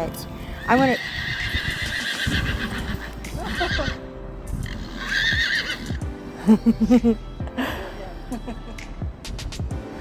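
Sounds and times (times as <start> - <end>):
horse whinnying: 0.6 - 4.0, 4.6 - 6.0.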